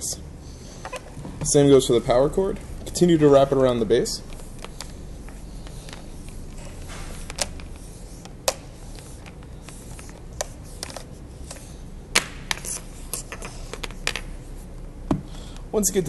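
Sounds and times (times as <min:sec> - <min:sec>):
cord rustling: 0:00.6 - 0:14.8.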